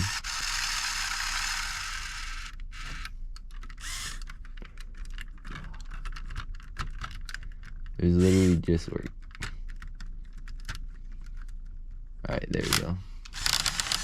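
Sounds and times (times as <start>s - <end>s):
motor whirring: 0.0s - 3.1s, 3.8s - 4.2s, 8.2s - 8.6s, 12.6s - 14.0s
plastic gears clicking: 0.0s - 11.6s, 12.6s - 14.0s.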